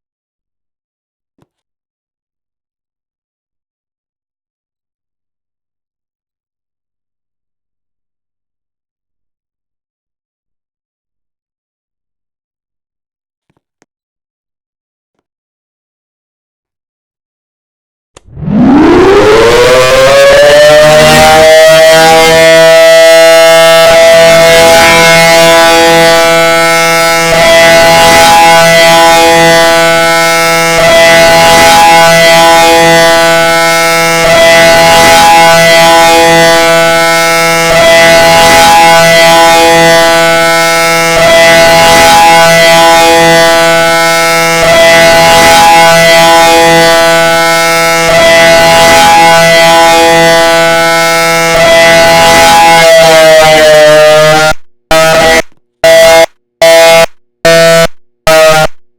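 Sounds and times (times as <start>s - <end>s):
civil defense siren: 18.3s - 58.7s.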